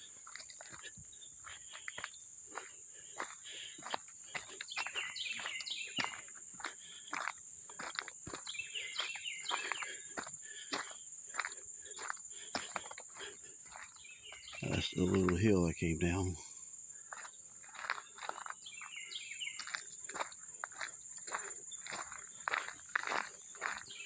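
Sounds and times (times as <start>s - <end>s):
insects droning: 0.0s - 24.0s
bird chirping: 4.7s - 6.2s, 8.4s - 9.9s, 13.7s - 16.3s, 18.6s - 19.8s.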